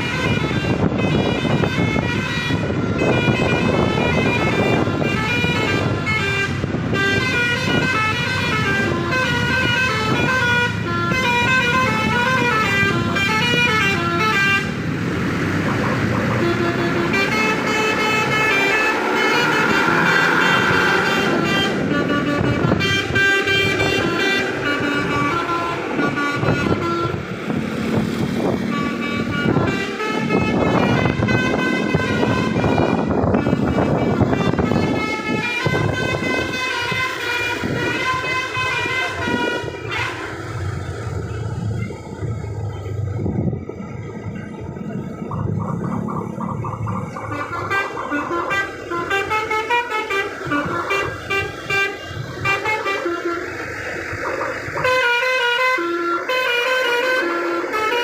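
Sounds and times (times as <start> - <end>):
musical vehicle horns: 0.0 - 42.4, 44.2 - 58.0
noisy rush: 14.6 - 56.5.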